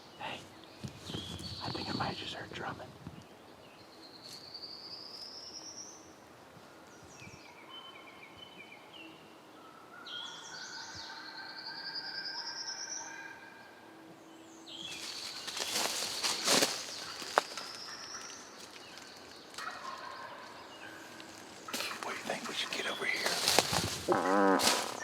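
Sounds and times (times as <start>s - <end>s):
birds' short repeated notes: 14.9s - 24.1s.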